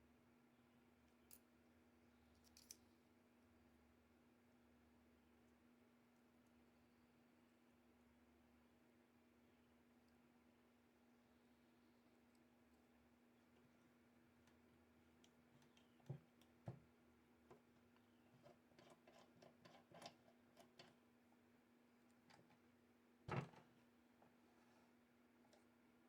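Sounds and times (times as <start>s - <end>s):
light clicks and taps: 14.4s - 21.0s.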